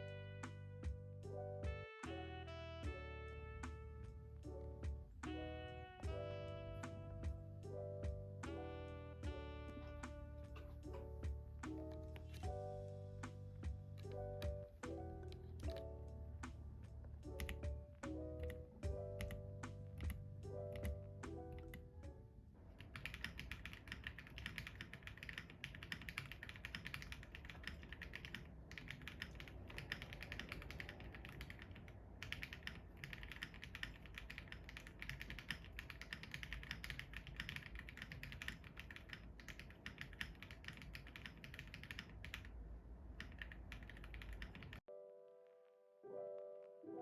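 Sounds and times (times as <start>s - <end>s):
background music: 0.0s - 22.4s, 44.9s - 47.0s
mechanical keyboard typing: 17.3s - 21.9s, 22.8s - 42.5s, 43.2s - 44.8s.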